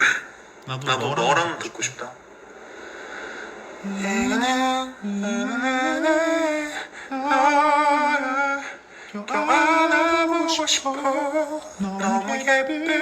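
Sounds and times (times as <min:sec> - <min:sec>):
man singing unaccompanied ballad: 0:03.8 - 0:13.0.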